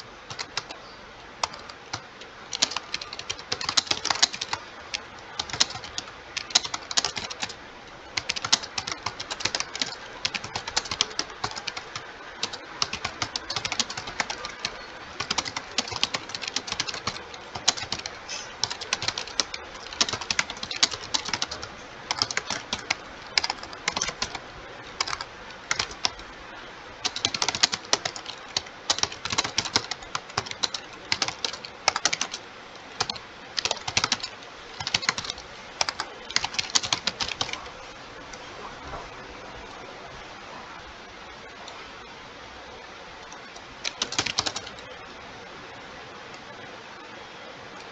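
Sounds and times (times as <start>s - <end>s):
fast keyboard typing: 0.0s - 0.8s, 1.4s - 24.4s, 25.0s - 26.2s, 27.0s - 32.4s, 33.0s - 37.7s, 43.5s - 44.9s.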